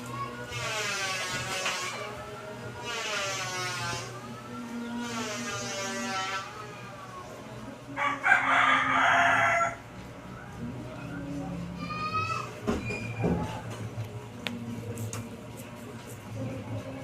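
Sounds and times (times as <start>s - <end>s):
rooster crowing: 7.9s - 10.0s.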